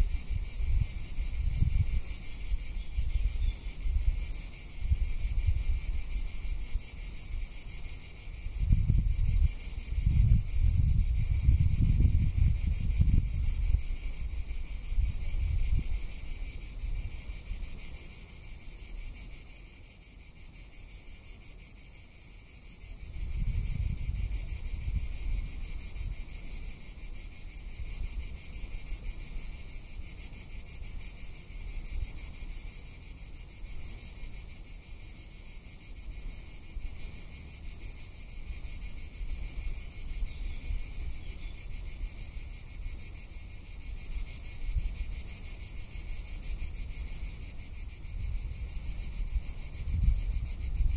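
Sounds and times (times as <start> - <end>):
wind rumble on microphone: 0.0 - 17.8, 23.0 - 29.0, 43.6 - 50.9
cicadas buzzing: 0.0 - 50.9.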